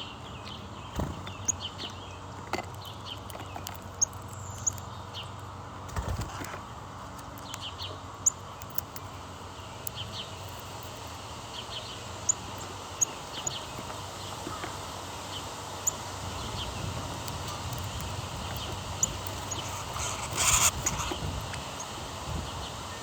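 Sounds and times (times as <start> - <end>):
small birds chirping: 0.0 - 23.0
steady outdoor hiss: 0.0 - 23.0.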